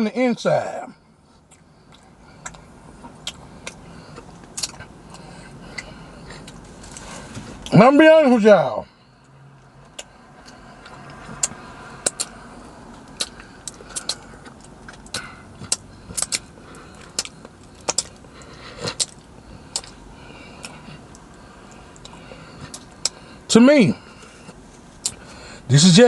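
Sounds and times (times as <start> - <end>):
steady background hum: 0.0 - 26.0
person chewing with mouth smacks: 1.4 - 7.7, 9.8 - 23.2, 24.5 - 25.2.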